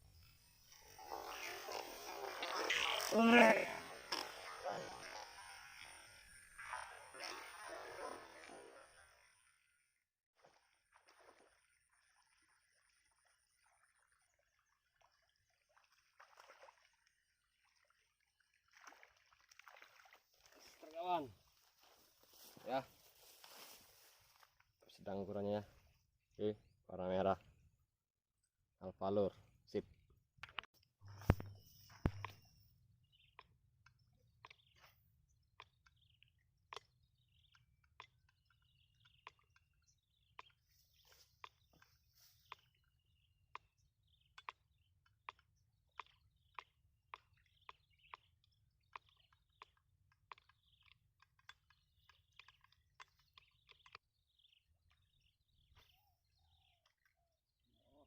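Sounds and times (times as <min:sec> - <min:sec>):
soft crackles: 0:18.7 - 0:24.8.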